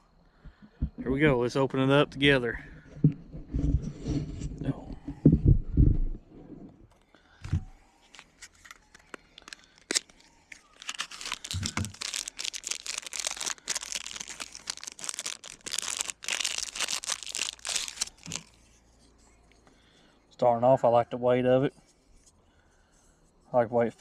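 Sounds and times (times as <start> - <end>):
packaging tearing and crinkling: 8.0 - 18.6
packaging clicks: 8.1 - 18.5.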